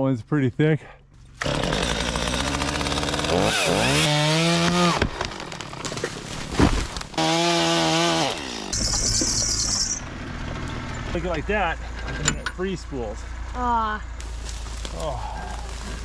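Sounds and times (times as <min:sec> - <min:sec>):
chainsaw revving: 0:01.4 - 0:06.3, 0:07.0 - 0:09.4.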